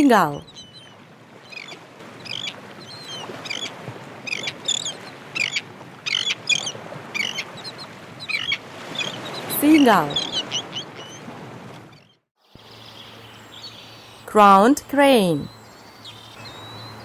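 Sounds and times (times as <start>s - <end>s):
seagulls calling: 0.3s - 12.2s.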